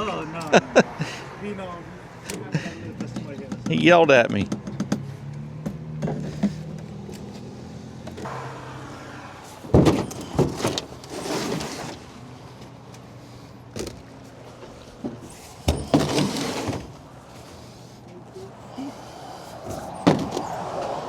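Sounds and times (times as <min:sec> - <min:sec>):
clunks and knocks at fuel pump: 0:02.3 - 0:06.6.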